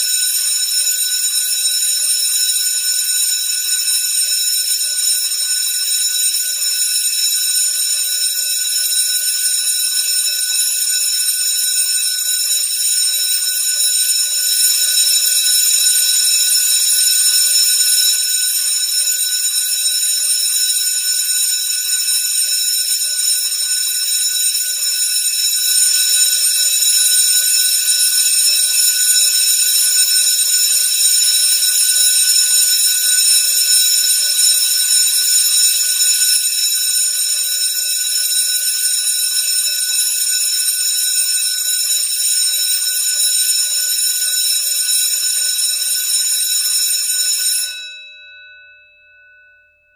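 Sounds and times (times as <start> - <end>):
school bell ringing: 45.3 - 48.9.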